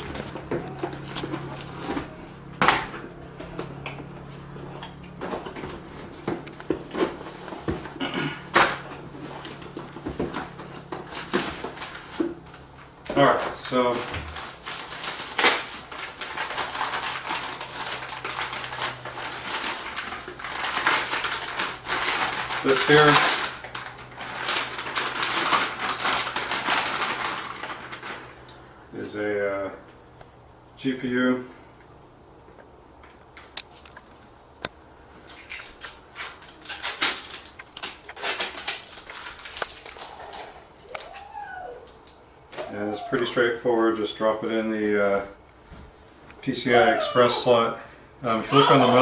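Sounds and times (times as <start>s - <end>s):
rustling: 0.0s - 28.8s, 35.0s - 43.4s.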